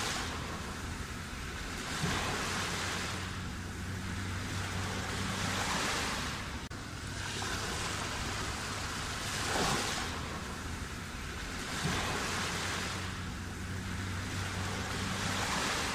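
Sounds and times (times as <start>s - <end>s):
sea waves washing ashore: 0.0s - 15.9s.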